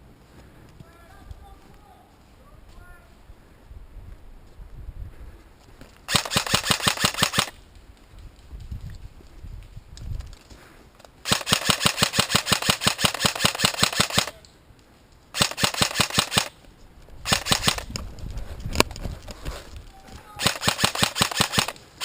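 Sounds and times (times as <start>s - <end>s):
airsoft gun firing bursts: 6.1s - 7.6s, 11.2s - 14.4s, 15.3s - 16.6s, 17.2s - 17.9s, 20.4s - 21.8s.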